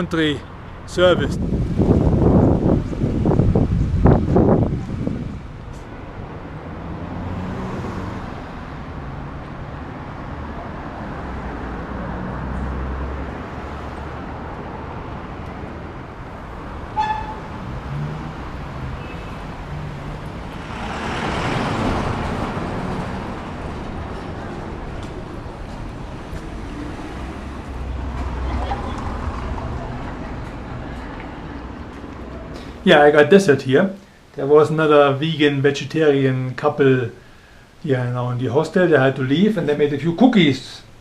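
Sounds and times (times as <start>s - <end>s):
vehicle passing close: 0.0s - 33.4s
traffic engine rumble: 0.0s - 41.0s
car horn toot: 16.9s - 17.5s.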